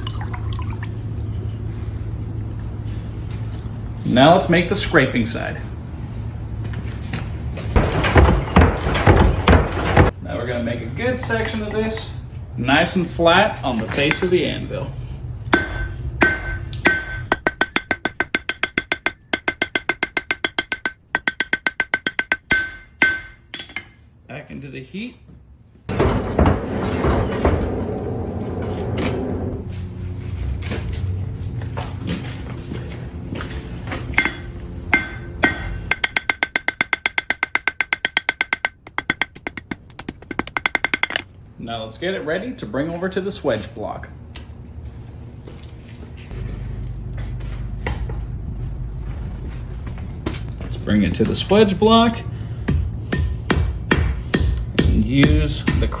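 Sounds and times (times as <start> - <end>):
hammer striking iron on anvil: 15.5 - 24.0, 34.2 - 41.3, 52.7 - 56.0
low rumble: 25.9 - 33.2, 46.2 - 50.9.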